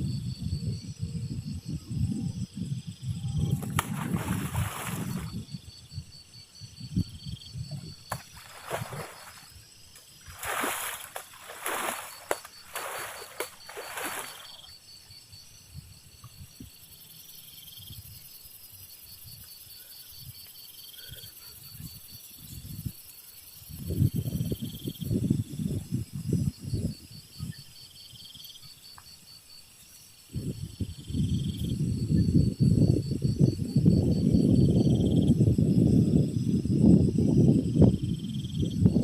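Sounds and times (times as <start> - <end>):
insect trilling: 3.4 - 15.0
water sloshing and splashing: 3.5 - 5.4, 8.1 - 14.7.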